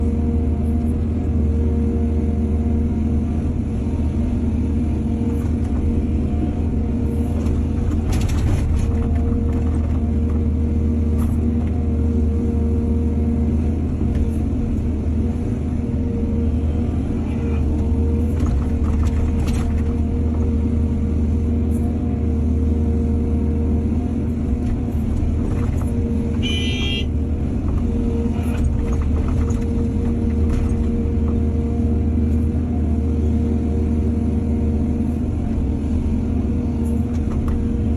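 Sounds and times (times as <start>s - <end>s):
excavator diesel engine running: 0.0s - 37.9s.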